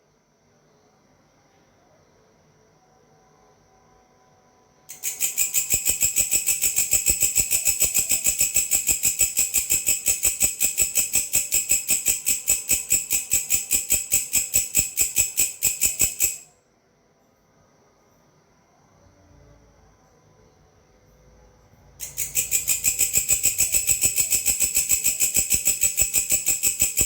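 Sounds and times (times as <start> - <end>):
grasshopper calling: 4.9 - 16.5, 22.0 - 27.0.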